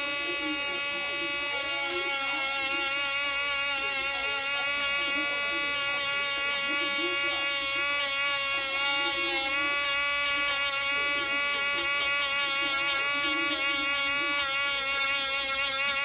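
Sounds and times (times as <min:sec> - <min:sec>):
rotary tool motor whining: 0:00.0 - 0:16.0.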